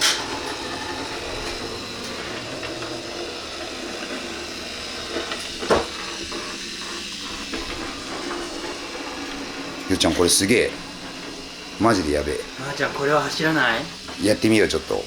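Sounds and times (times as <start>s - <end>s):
toy train motor whirring: 0.0s - 15.0s.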